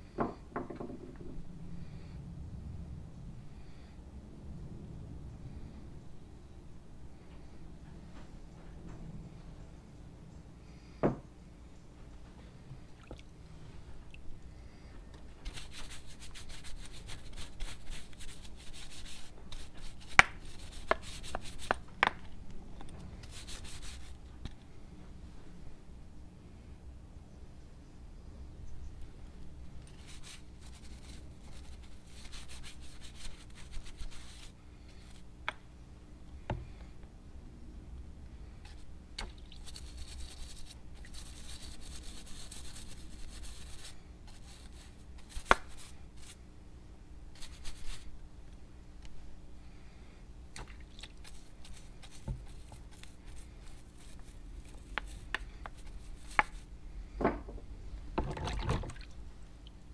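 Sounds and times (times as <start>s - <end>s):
steady low hum: 0.0s - 59.9s
scraping or scrubbing: 15.4s - 21.8s, 29.8s - 35.2s, 39.5s - 46.4s, 47.4s - 48.1s, 51.0s - 56.7s.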